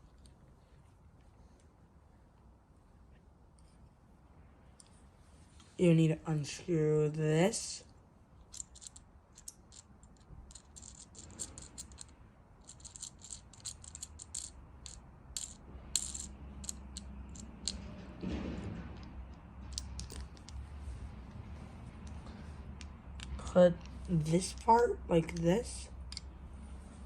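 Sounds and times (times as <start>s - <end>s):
light clicks and rattles: 8.4s - 26.4s.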